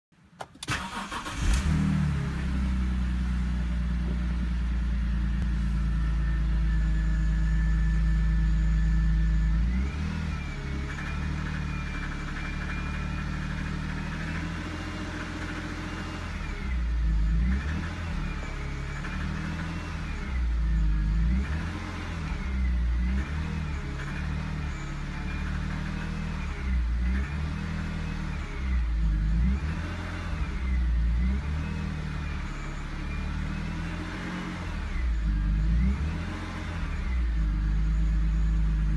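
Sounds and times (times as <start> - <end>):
car engine starting and revving: 0.4 - 38.9
engine clatter: 9.7 - 31.6.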